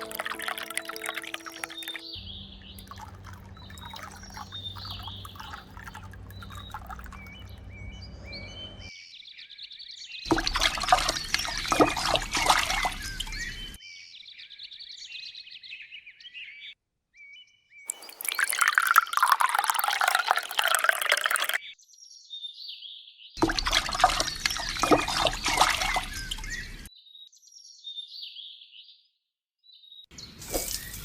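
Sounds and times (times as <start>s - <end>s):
water pouring and splashing: 0.0s - 2.1s, 2.7s - 7.7s, 10.3s - 13.8s, 17.9s - 21.6s, 23.4s - 26.9s, 30.3s - 31.0s
small birds chirping: 0.0s - 31.0s.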